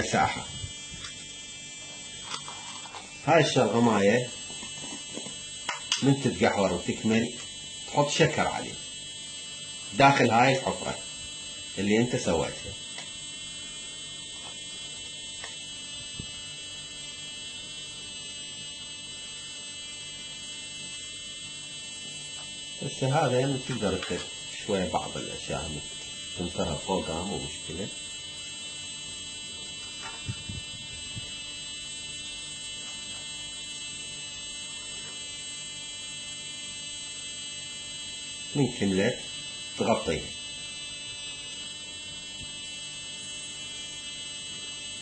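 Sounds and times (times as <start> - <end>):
high thin electrical tones: 0.0 - 8.8, 29.1 - 33.5
electrical whine over low hum: 0.0 - 45.0.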